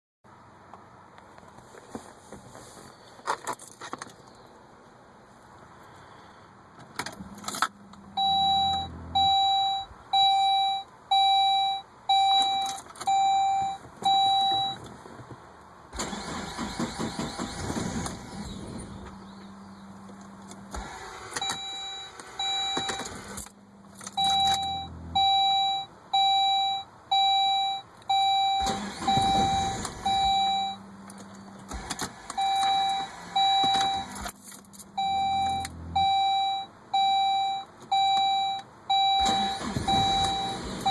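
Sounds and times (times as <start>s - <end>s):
car warning chime beeping: 7.2s - 14.9s, 18.2s - 40.9s
starter cranking engine: 16.0s - 18.5s.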